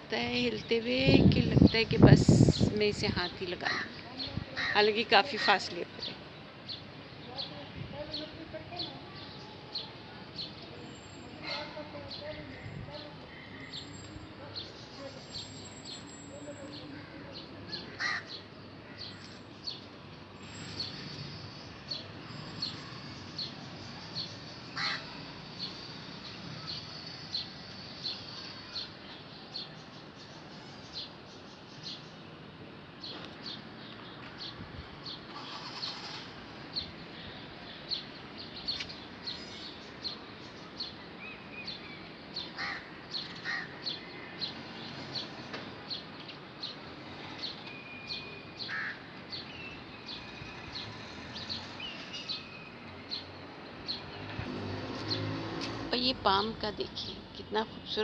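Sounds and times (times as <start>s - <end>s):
outdoor background hiss: 0.0s - 58.0s
small birds chirping: 0.2s - 58.0s
crow-like caws: 17.9s - 19.2s, 24.8s - 25.2s, 42.6s - 44.4s, 48.7s - 49.0s.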